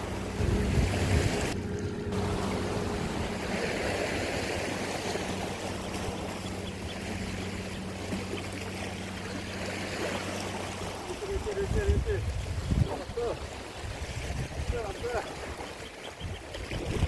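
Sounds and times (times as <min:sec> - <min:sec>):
steady low hum: 0:00.0 - 0:11.1
water lapping against rocks: 0:00.0 - 0:17.0.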